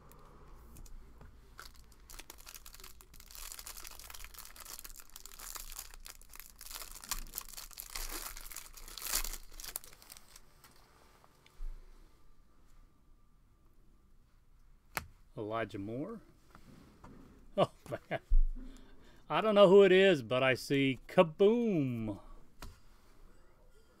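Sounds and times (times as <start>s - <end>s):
wrapper tearing and crinkling: 1.6s - 10.5s.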